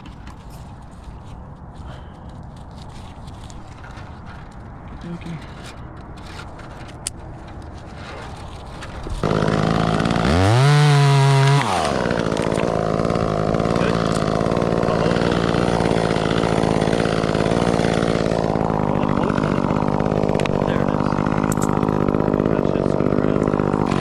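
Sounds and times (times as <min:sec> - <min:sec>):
chainsaw starting and idling: 0:09.2 - 0:24.0.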